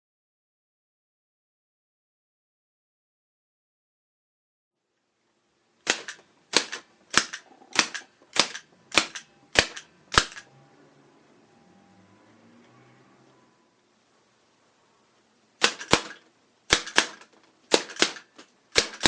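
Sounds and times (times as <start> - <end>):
rubber band gun snapping clicks: 5.9 - 10.4.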